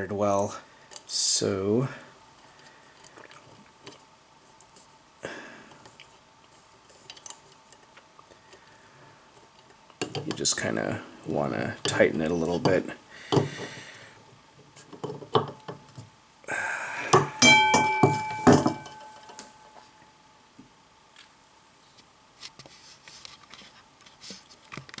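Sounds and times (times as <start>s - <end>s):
metal parts clicking and clinking: 17.2s - 19.8s
sharp metallic knocks: 17.2s - 19.8s
metallic ringing tone: 17.2s - 20.2s.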